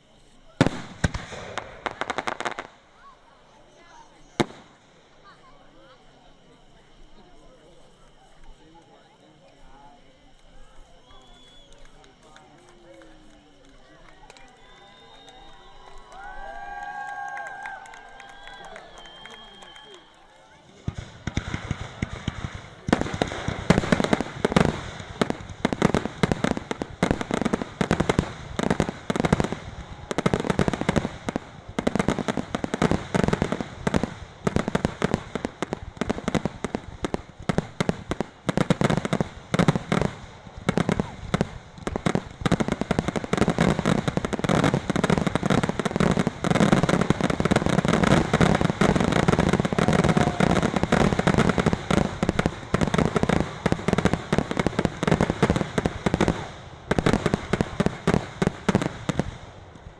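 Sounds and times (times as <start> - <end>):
fireworks bangs and crackles: 0.1 - 59.9.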